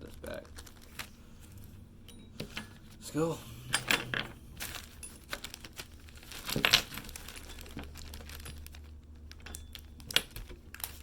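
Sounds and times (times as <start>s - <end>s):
plastic bag crinkling: 0.0s - 1.9s, 4.2s - 11.0s.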